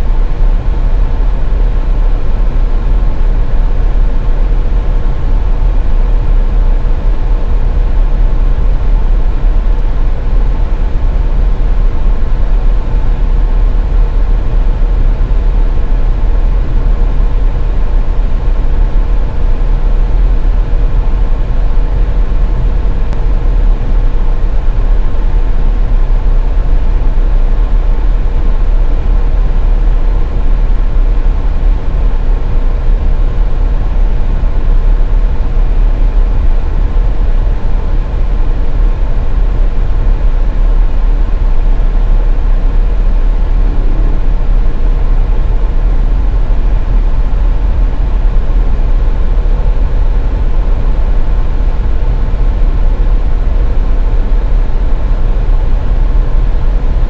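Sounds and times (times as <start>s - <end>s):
car road and engine noise: 0.0s - 57.0s.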